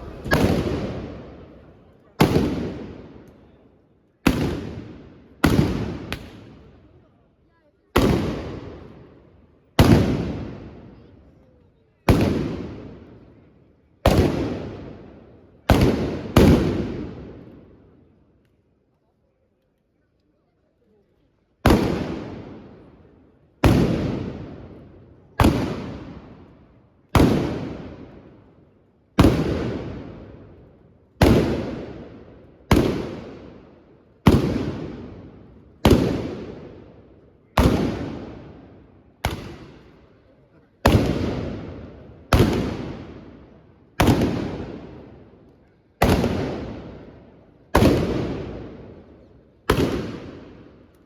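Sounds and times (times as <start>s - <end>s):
blunderbuss blank shots echoing: 0.0s - 3.2s.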